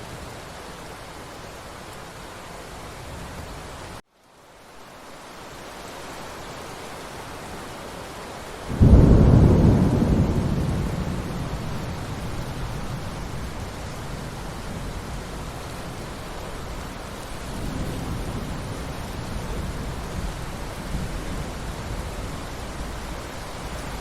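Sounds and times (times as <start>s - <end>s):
rain hissing: 0.0s - 24.0s
thunder rumbling: 8.7s - 24.0s.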